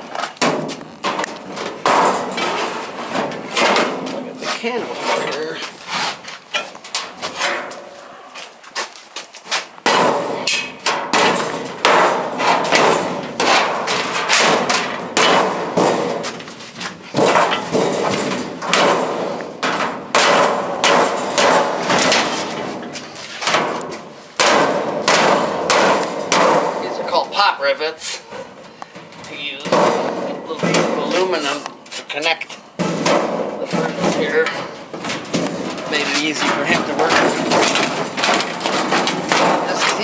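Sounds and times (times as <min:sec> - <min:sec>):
hammer striking sheet metal: 0:00.4 - 0:05.3, 0:09.9 - 0:16.5, 0:17.1 - 0:27.2, 0:29.6 - 0:31.8, 0:32.8 - 0:40.0.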